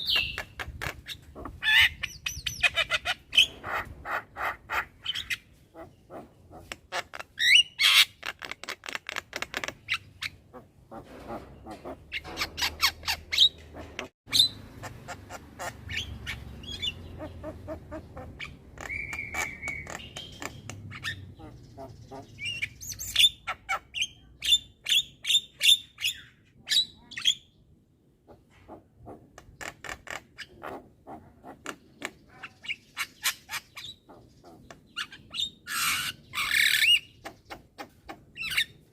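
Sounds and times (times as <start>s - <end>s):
bird whistle: 18.8s - 20.4s.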